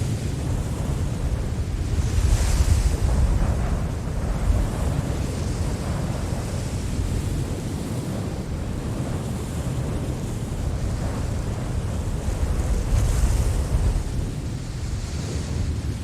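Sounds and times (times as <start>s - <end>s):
storm wind gusting: 0.0s - 16.0s.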